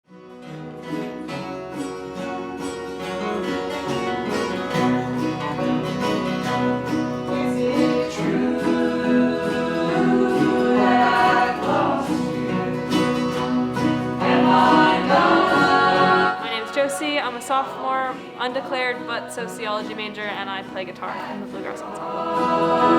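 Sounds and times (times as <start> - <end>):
bluegrass string band: 0.3 - 22.9
person singing: 6.5 - 22.9.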